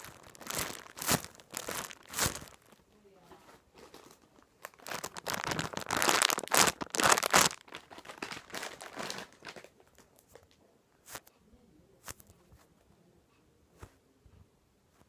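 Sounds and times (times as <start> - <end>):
plastic packaging crinkling: 0.0 - 2.9, 3.7 - 10.5.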